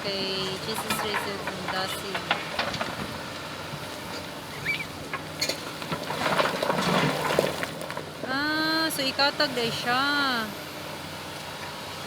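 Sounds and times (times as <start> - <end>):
excavator diesel engine humming: 0.0 - 12.0
stones scraping and clattering: 5.4 - 8.0.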